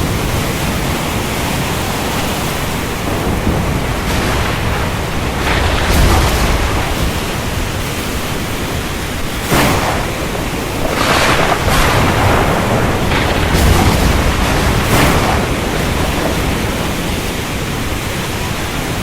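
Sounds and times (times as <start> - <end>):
heavy rain pouring: 0.0 - 19.0.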